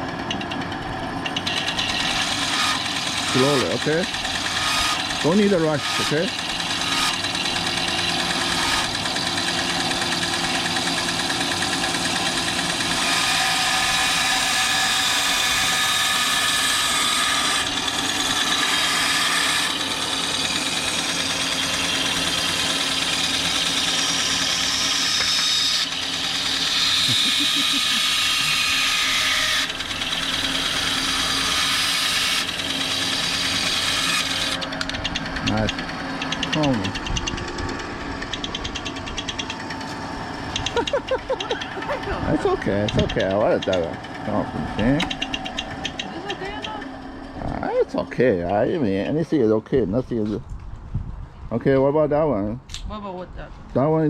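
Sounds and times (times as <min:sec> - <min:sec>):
band saw cutting wood: 0:00.0 - 0:49.5.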